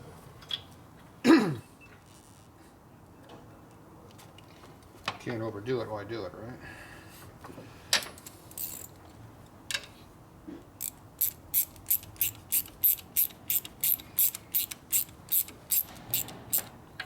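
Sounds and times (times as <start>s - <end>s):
hand ratchet clicking: 8.5s - 9.0s, 10.8s - 16.8s.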